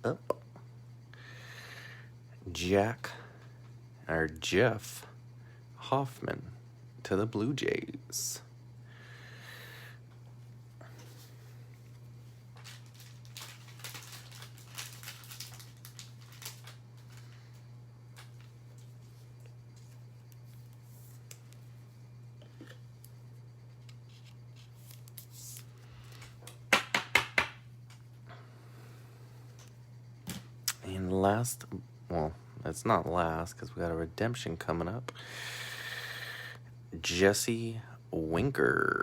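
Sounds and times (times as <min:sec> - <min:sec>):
steady low hum: 0:00.0 - 0:39.0
trading cards rustling: 0:12.5 - 0:18.9.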